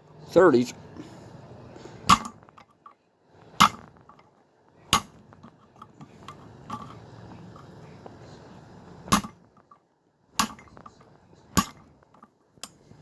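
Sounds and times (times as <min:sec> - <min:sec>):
hammer striking metal screwdriver: 0:03.6 - 0:03.9, 0:10.4 - 0:10.9.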